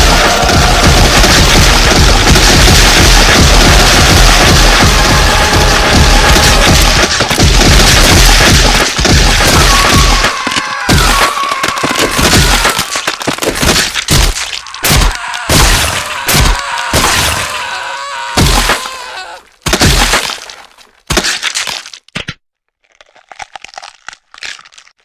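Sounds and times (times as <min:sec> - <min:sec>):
loud crashing breaking impacts: 0:00.0 - 0:17.5
faint crackling and crunching: 0:20.3 - 0:25.0.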